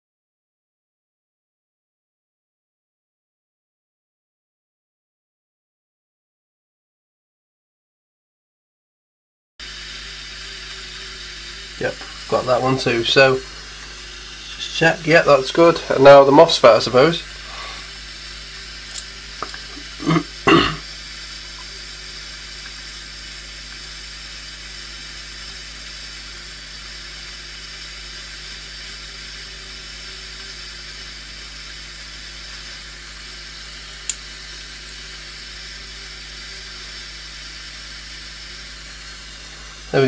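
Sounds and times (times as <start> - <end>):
steady hiss: 9.6 - 40.0
small click: 18.9 - 19.6, 34.0 - 34.3.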